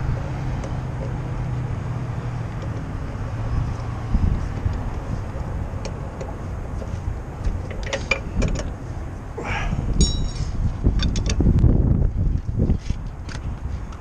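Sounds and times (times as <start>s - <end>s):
wind rumble on microphone: 0.0s - 14.0s
ringing metal tone: 10.0s - 10.5s
metal tools clinking on wheel: 10.0s - 11.2s.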